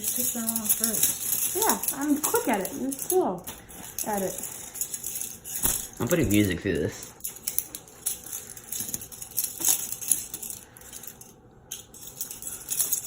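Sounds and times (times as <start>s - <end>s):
metal handcuffs clinking: 0.0s - 13.0s.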